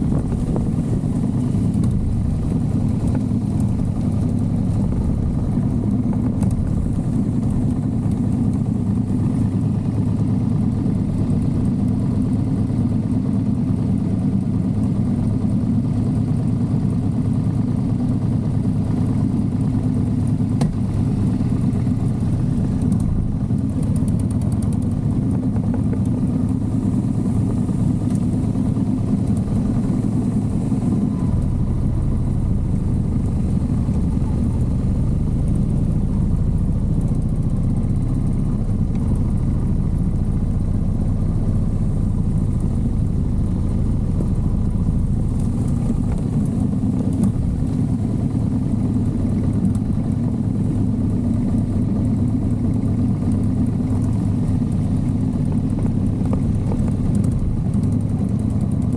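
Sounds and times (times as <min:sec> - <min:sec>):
motorcycle engine running: 0:00.0 - 0:58.9.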